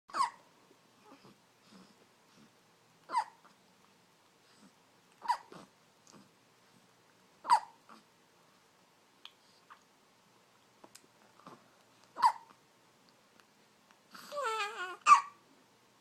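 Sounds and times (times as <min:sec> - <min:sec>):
baby hiccupping: 0:00.1 - 0:00.4, 0:05.2 - 0:05.7, 0:07.4 - 0:08.1, 0:12.1 - 0:12.6, 0:14.2 - 0:15.4.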